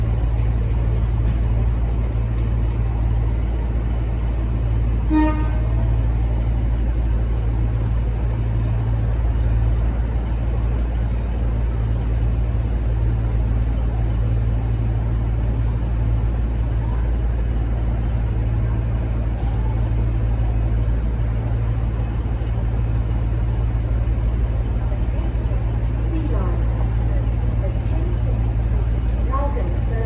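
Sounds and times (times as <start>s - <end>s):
diesel locomotive engine rumbling: 0.0s - 30.0s
short horn toot: 5.1s - 5.8s.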